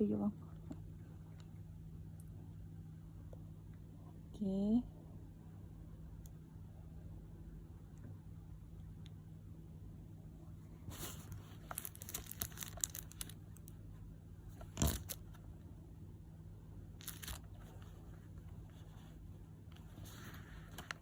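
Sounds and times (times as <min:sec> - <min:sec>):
paper and packaging crinkling: 0:11.0 - 0:13.4, 0:17.0 - 0:17.8.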